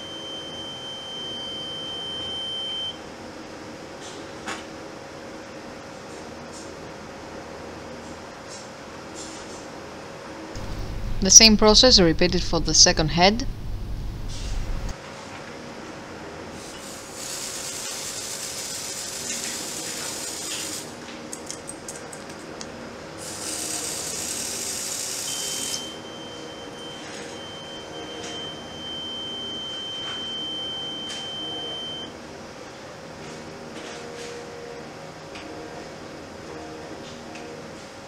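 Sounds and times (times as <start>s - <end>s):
alarm steady high tone: 0.0s - 3.0s, 10.6s - 14.9s, 25.3s - 32.1s
aerosol spray hissing: 16.8s - 20.8s.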